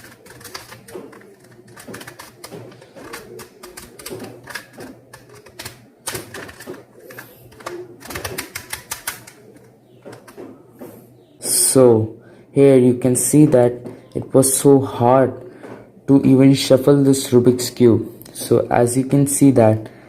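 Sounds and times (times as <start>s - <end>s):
puzzle cube turning clicks: 0.0s - 10.4s.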